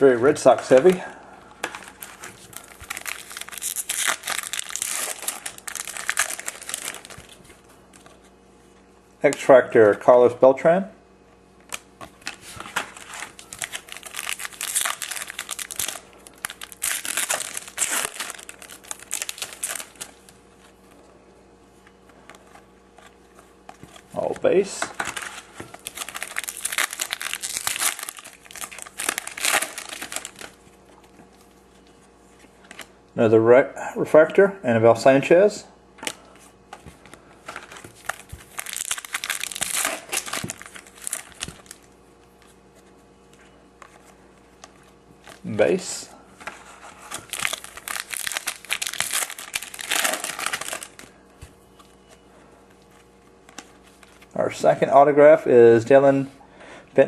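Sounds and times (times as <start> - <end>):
foil wrapper tearing and crinkling: 1.8 - 7.4, 12.2 - 20.3, 25.0 - 30.6, 37.5 - 41.9, 47.0 - 51.2.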